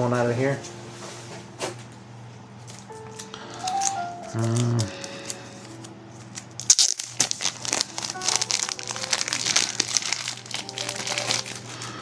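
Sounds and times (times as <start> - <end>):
faint background music: 0.0 - 12.0
packaging crinkling: 2.6 - 12.0.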